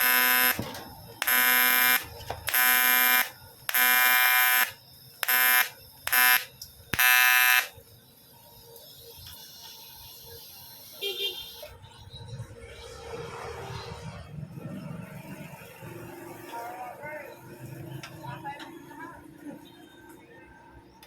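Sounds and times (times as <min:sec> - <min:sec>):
welding arc buzzing: 0:00.0 - 0:07.8.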